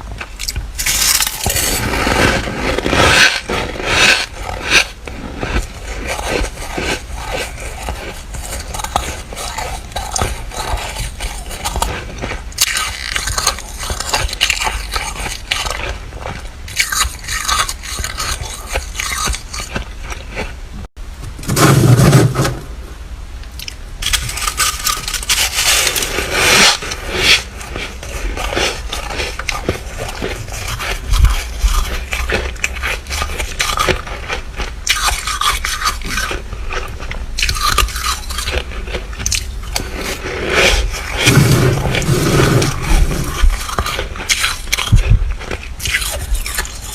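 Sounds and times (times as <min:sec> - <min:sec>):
frost being scraped: 0:00.8 - 0:20.6, 0:21.4 - 0:22.7, 0:24.0 - 0:46.9
dull crunch: 0:37.0 - 0:46.9.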